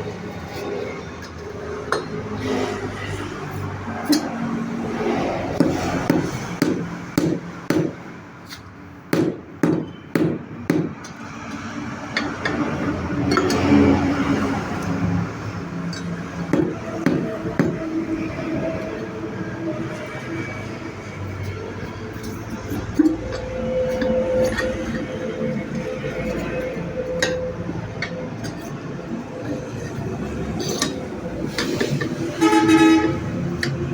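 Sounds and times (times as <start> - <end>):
hammer striking wheel rim: 5.5 - 11.2, 15.9 - 17.9.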